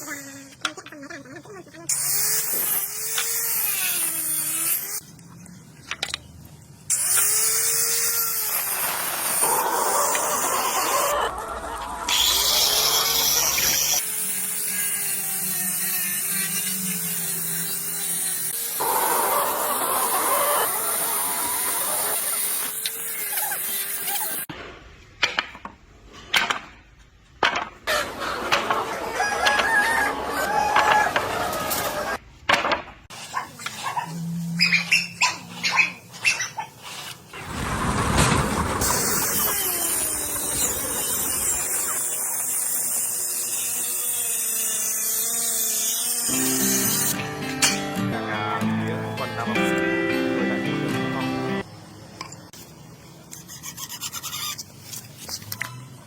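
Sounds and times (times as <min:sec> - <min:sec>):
chickens clucking and calling: 0:09.6 - 0:12.4, 0:27.9 - 0:32.2.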